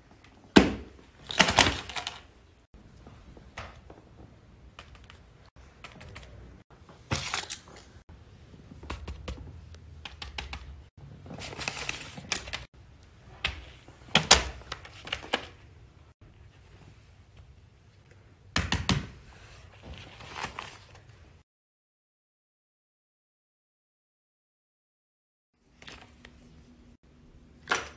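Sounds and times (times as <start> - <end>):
rustling and crinkling: 11.0 - 12.7.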